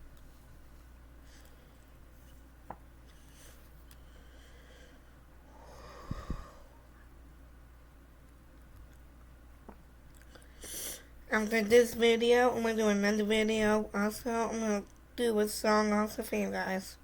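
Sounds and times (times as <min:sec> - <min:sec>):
person breathy sound: 0:05.5 - 0:06.9.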